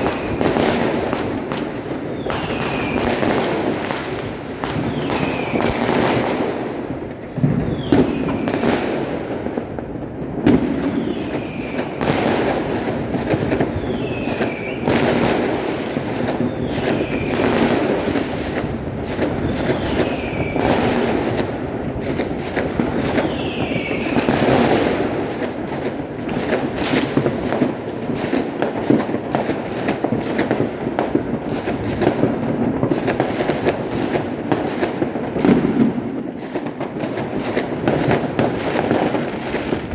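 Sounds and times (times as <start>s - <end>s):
falling firework whistles: 0.0s - 6.0s, 7.6s - 8.9s, 10.8s - 12.5s, 13.2s - 21.4s, 22.1s - 24.9s
firecrackers banging and crackling: 0.0s - 39.9s.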